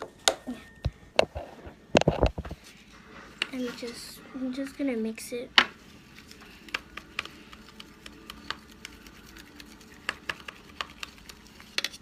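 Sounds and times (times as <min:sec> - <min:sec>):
utensil tapping against bowl: 0:10.0 - 0:11.2.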